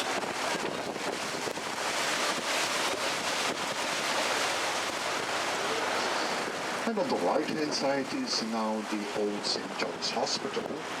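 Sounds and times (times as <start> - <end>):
wind on microphone: 0.0 - 7.8
water rushing along boat: 0.0 - 11.0.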